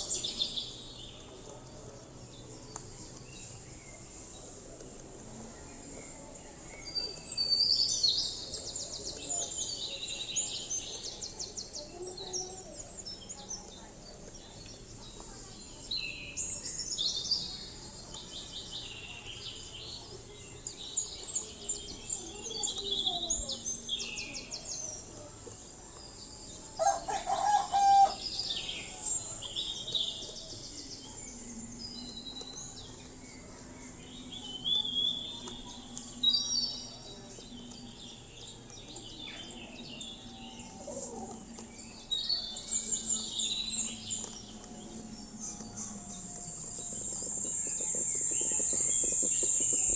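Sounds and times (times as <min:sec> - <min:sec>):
birds chirping and trilling: 0:05.4 - 0:49.9
high insect drone: 0:42.9 - 0:49.9.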